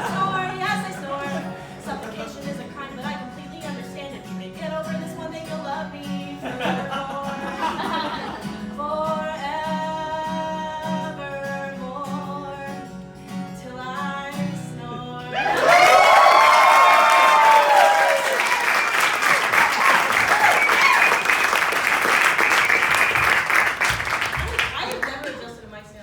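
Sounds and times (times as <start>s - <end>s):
woman singing: 0.0s - 8.0s, 8.6s - 15.5s
strummed acoustic guitar: 0.0s - 15.4s
audience applause: 15.4s - 25.5s.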